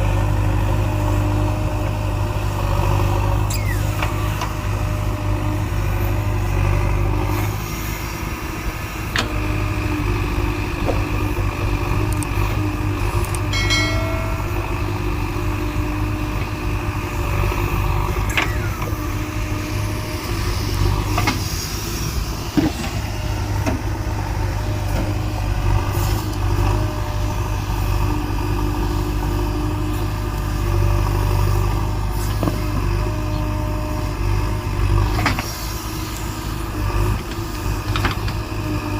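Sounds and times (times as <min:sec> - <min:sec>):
diesel engine running: 0:00.0 - 0:38.9
sharp metallic knocks: 0:13.5 - 0:16.0.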